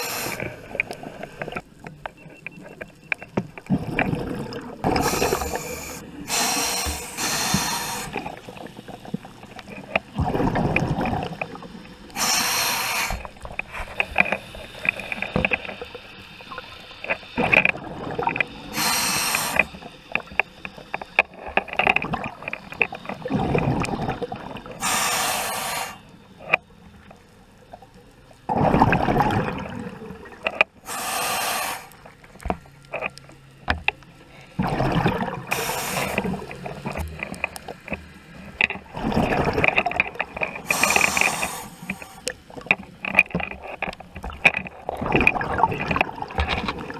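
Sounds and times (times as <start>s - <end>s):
exhaled bubbles rumbling: 3.6s - 12.2s, 17.4s - 19.9s, 21.7s - 24.8s, 28.4s - 30.5s, 34.6s - 37.8s, 38.8s - 41.5s, 44.2s - 46.9s.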